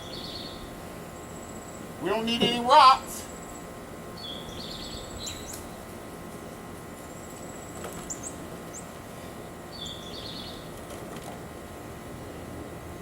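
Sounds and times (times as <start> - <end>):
small bird chirping: 0.0 - 0.7, 4.2 - 5.7, 7.6 - 8.9, 9.7 - 10.7
steady background hum: 0.0 - 13.0.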